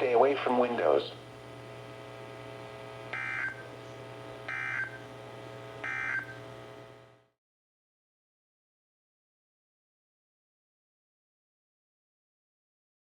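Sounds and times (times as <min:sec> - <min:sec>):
steady low hum: 0:00.0 - 0:07.4
shrill digital data bursts: 0:03.1 - 0:03.7, 0:04.5 - 0:05.0, 0:05.8 - 0:06.4.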